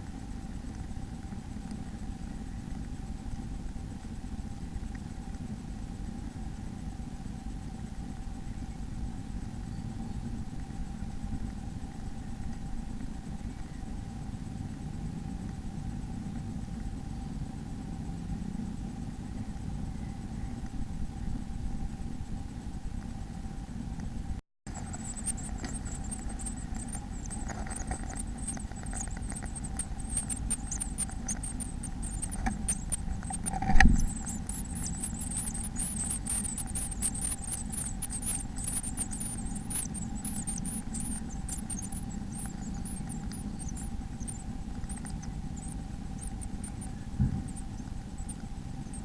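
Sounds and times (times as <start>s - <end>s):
small scratches and clicks: 0.0s - 17.2s, 18.0s - 49.0s
electrical hum: 0.0s - 49.0s
high wavering chick cheeping: 24.7s - 49.0s
loud thump: 47.2s - 47.5s.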